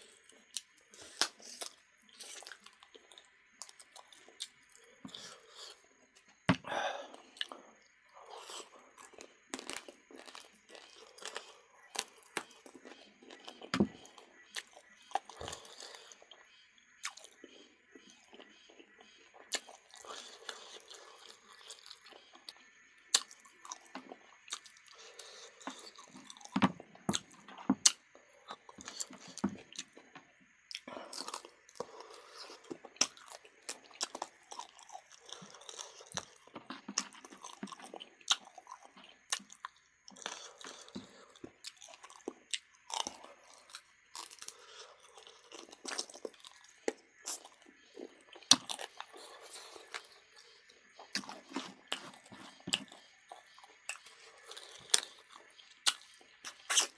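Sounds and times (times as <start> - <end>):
chewing and crunching food: 0.0 - 56.9.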